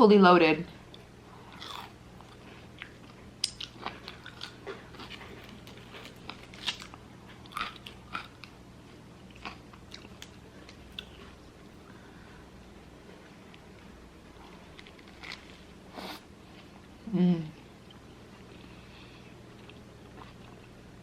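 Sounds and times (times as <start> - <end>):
person chewing crunchy food: 0.9 - 11.6, 14.3 - 16.9, 17.6 - 20.9.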